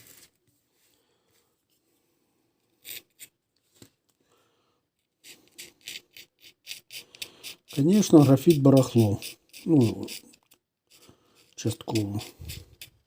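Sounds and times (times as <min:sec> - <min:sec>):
knife scraping: 0:05.2 - 0:13.0.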